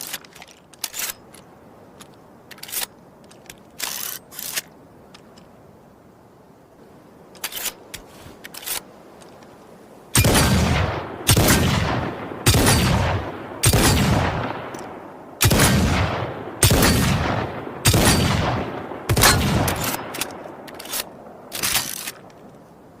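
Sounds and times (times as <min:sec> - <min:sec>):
revolver gunshots echoing: 0:10.2 - 0:20.7.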